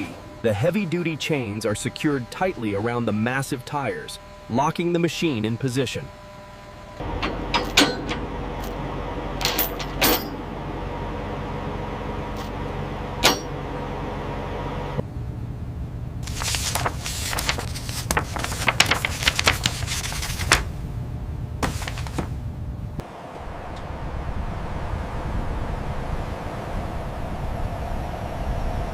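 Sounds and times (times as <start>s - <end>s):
low machine hum: 0.0s - 28.9s
heavy chains clinking against steel: 9.4s - 10.4s.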